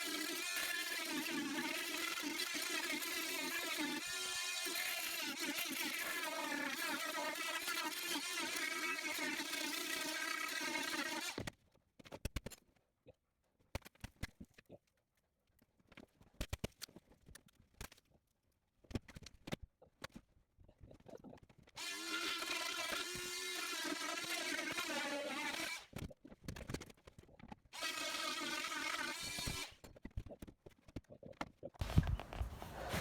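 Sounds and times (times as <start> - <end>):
oscillating multitool cutting: 0.0 - 11.5, 21.8 - 25.9, 27.8 - 29.8.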